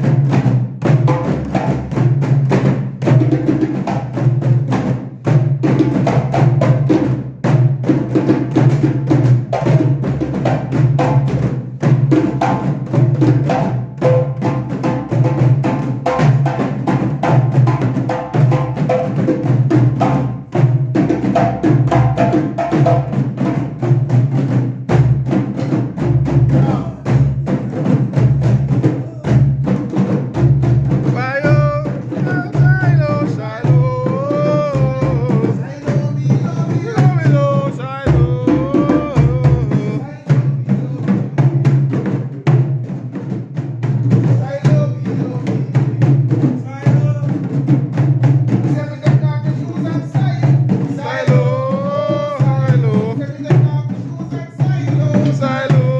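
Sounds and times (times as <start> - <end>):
person singing: 28.9 - 29.5, 31.0 - 41.5, 44.4 - 47.4, 48.7 - 55.9.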